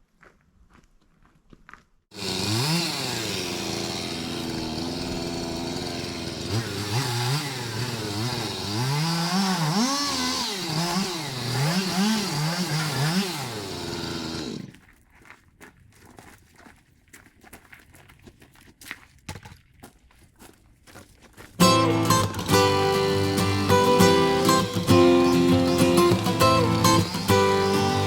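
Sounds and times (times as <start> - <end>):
chainsaw revving: 2.1 - 14.8, 21.6 - 28.0.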